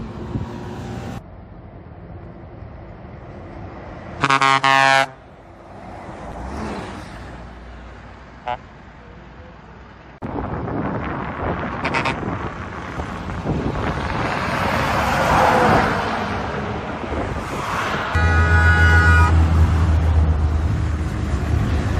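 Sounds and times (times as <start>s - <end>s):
traffic noise: 0.0s - 21.9s
vehicle passing: 3.0s - 8.4s, 12.4s - 21.9s
bus horn blasting: 4.2s - 5.2s, 8.4s - 8.6s, 11.8s - 12.3s, 18.1s - 19.7s.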